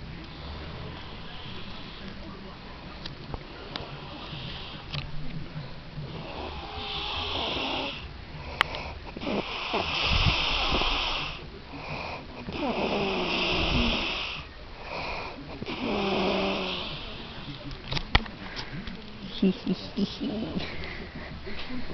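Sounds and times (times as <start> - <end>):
man snoring: 6.1 - 17.4.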